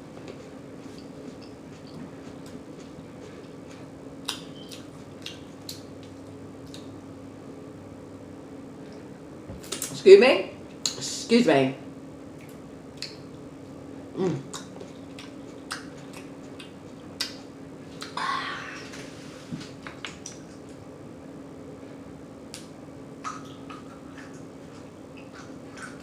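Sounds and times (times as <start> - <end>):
faint steady hum: 0.0 - 26.0
wet chewing mouth sounds: 0.3 - 6.9, 14.4 - 18.2
short low vocal sound: 14.1 - 14.5.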